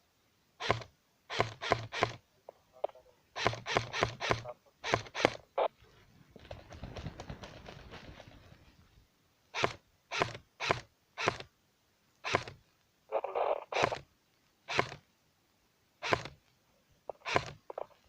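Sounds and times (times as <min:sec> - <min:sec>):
rustling and scraping: 0:00.7 - 0:09.0.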